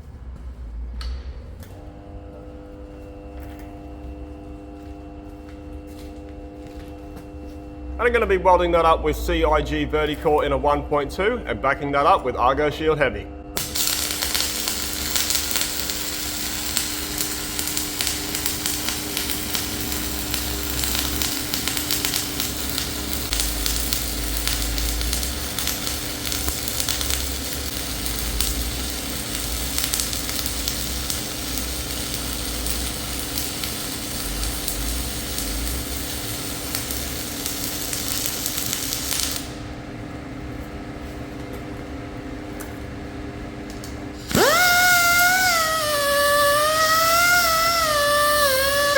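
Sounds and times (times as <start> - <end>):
steady hum: 0.0 - 41.4, 43.2 - 48.9
welding arc crackling and sizzling: 13.6 - 39.7, 43.7 - 48.9.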